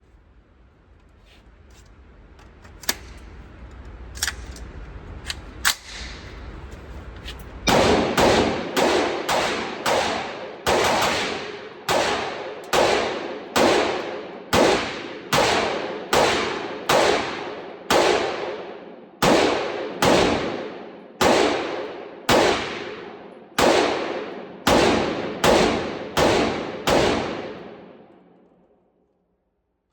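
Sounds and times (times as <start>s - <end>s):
rifle shots ringing: 7.6s - 28.3s.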